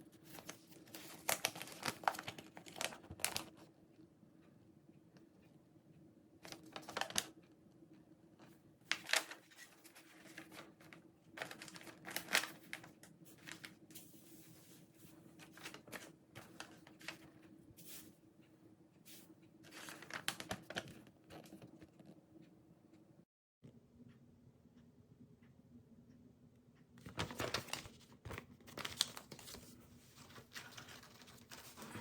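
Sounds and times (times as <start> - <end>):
faint steady hum: 0.0 - 32.0
packaging rustling: 0.3 - 3.6, 8.9 - 13.8, 19.7 - 21.6, 27.1 - 32.0.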